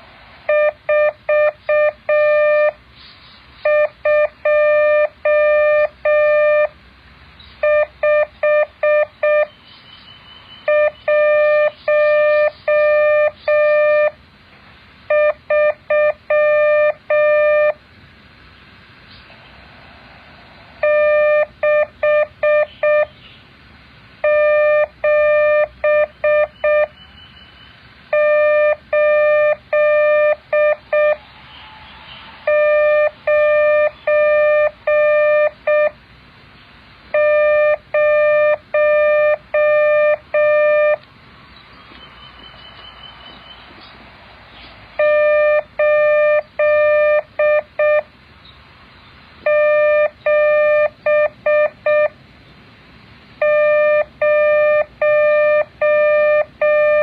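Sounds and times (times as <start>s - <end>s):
faint hiss: 0.0s - 3.7s, 11.2s - 15.1s, 15.8s - 40.0s, 52.1s - 53.4s
morse code beeps: 0.5s - 2.8s, 3.6s - 6.7s, 7.6s - 9.5s, 10.6s - 14.2s, 15.1s - 17.8s, 20.8s - 23.1s, 24.2s - 27.0s, 28.1s - 31.2s, 32.4s - 36.0s, 37.1s - 41.0s, 45.0s - 48.1s, 49.4s - 52.2s, 53.4s - 57.0s.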